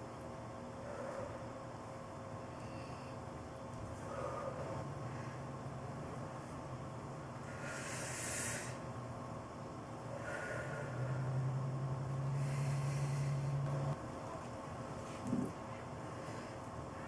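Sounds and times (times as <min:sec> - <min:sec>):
steady low hum: 0:00.0 - 0:17.0
person snorting breaths: 0:12.2 - 0:14.0.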